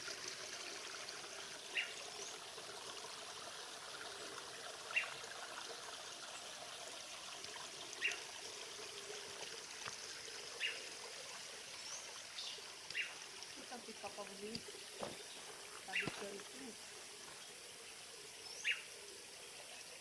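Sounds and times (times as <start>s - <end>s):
stream running: 0.0s - 20.0s.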